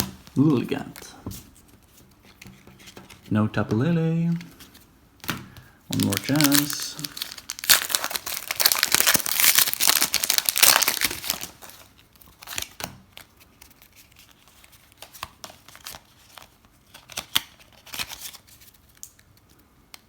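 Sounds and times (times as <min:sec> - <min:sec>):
foil wrapper crinkling and tearing: 0:05.9 - 0:19.5.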